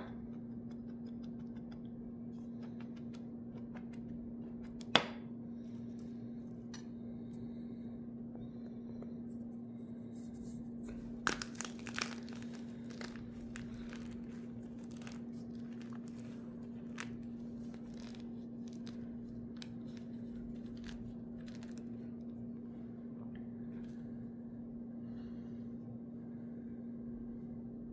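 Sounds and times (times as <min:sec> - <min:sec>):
low hum: 0:00.0 - 0:27.9
chalk crunching: 0:10.1 - 0:22.1.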